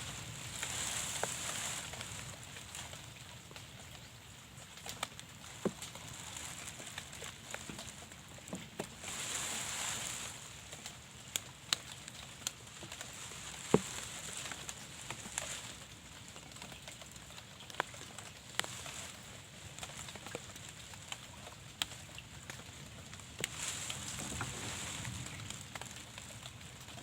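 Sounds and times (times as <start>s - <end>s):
heavier rain: 0.0s - 21.5s, 22.3s - 27.0s
faint rain hiss: 0.0s - 27.0s
raindrop taps: 4.8s - 19.0s.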